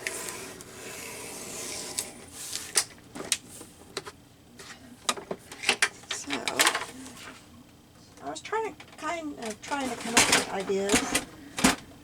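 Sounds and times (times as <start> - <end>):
paper rubbing and scraping: 0.0 - 2.7.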